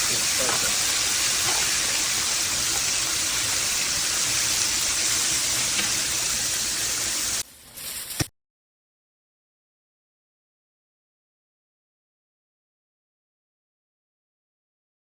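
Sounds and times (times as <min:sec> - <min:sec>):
chicken sizzling in hot oil: 0:00.0 - 0:08.3.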